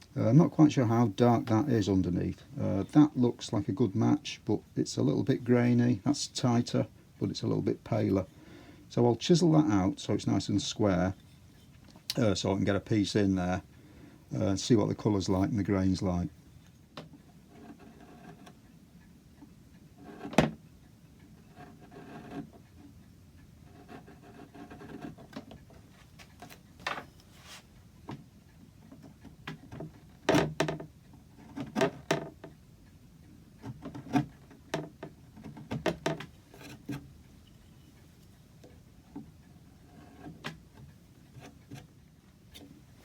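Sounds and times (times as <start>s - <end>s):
chisel scraping wood: 17.5s - 18.5s, 21.5s - 22.5s, 23.7s - 25.4s, 35.4s - 37.1s, 39.7s - 40.6s, 41.2s - 41.9s.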